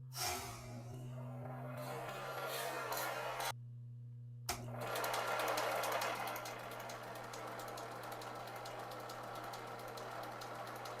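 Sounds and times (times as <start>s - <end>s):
electric motor hum: 4.5s - 11.0s
belt ticking on pulley: 5.6s - 11.0s.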